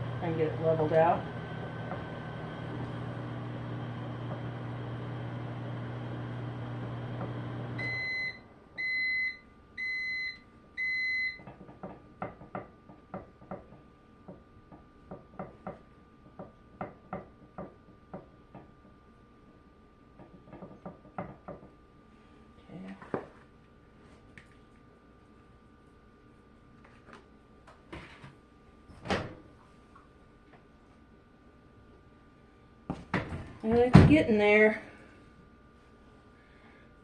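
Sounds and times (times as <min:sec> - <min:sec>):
microwave oven humming: 0:00.0 - 0:21.9
microwave beeps: 0:07.0 - 0:11.5.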